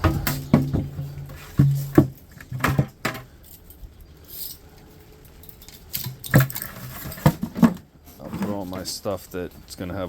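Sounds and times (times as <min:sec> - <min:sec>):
metal parts and tools clinking: 0:00.0 - 0:07.5.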